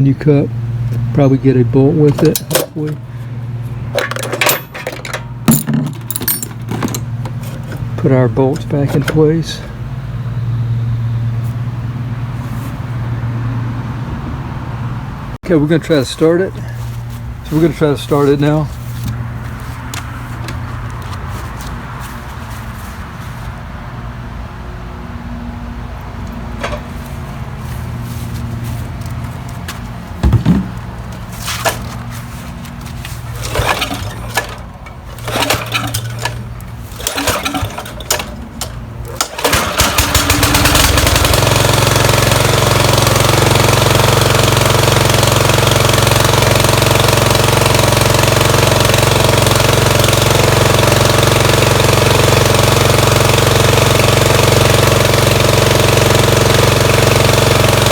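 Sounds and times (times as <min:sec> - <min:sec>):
engine pull-start clanks and rattles: 0:00.0 - 0:10.0, 0:26.0 - 0:27.2, 0:30.1 - 0:57.9
mower engine running: 0:00.0 - 0:13.9, 0:15.5 - 0:57.9.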